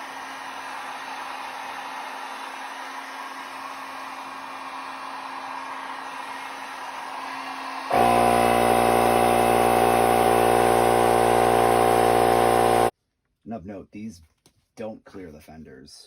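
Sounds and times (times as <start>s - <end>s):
air compressor motor running: 7.9s - 12.9s.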